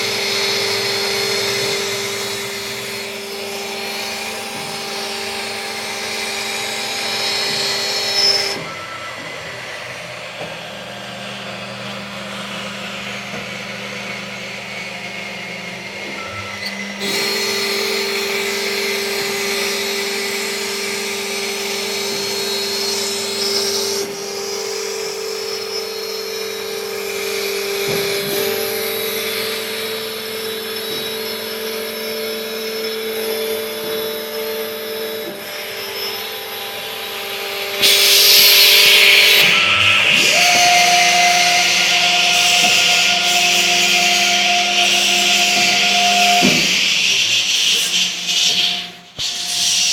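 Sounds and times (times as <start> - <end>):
router spindle whine: 0.0 - 49.9
bit cutting wood hissing: 35.6 - 49.9.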